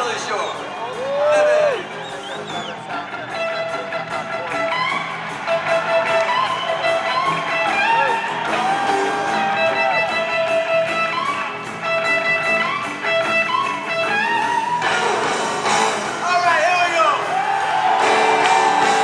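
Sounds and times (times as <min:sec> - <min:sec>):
electric guitar solo: 0:00.0 - 0:19.0.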